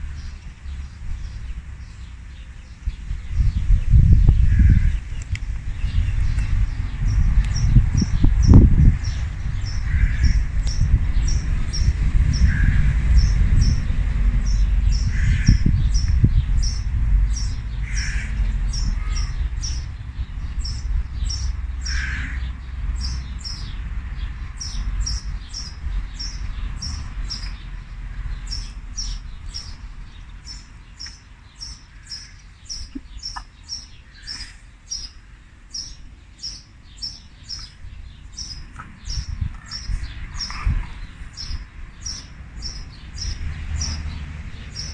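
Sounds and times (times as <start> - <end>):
low rumbling noise: 0.0 - 44.9
bird high chirp: 2.6 - 22.4, 28.4 - 44.0
lower bird call: 4.2 - 19.9, 20.6 - 23.7.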